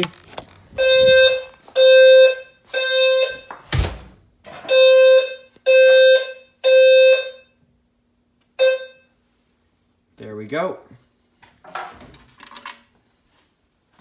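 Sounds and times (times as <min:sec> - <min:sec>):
low fire alarm tones: 0:00.8 - 0:03.8, 0:04.6 - 0:07.6, 0:08.6 - 0:09.2.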